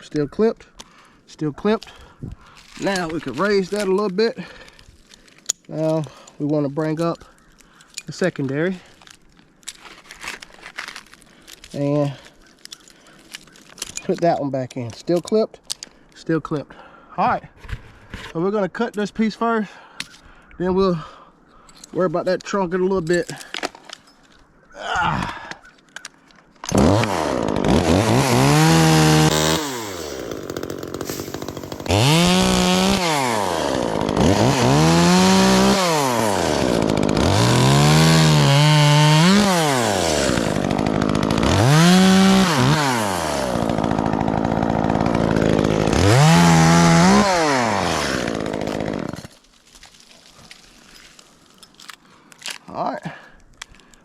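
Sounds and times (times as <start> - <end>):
chainsaw revving: 26.7 - 49.3.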